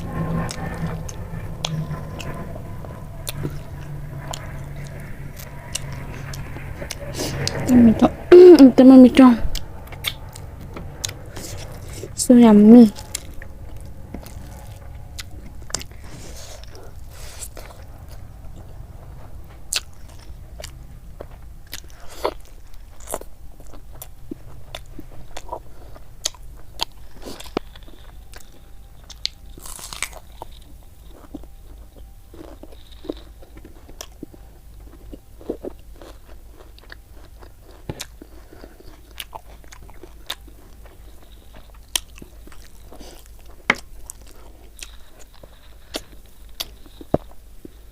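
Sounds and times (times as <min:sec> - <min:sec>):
person chewing and biting: 0:09.5 - 0:12.2, 0:13.0 - 0:47.9.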